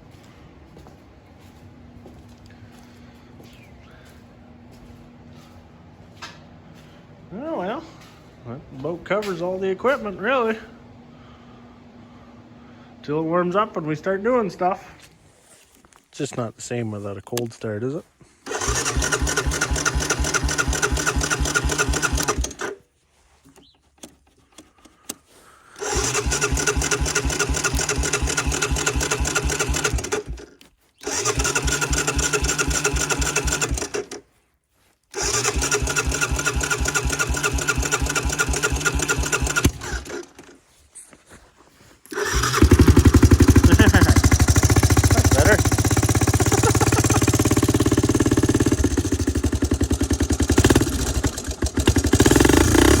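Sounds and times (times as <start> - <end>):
diesel engine cranking: 18.4 - 22.8, 23.5 - 34.3, 35.1 - 40.7, 42.0 - 53.0.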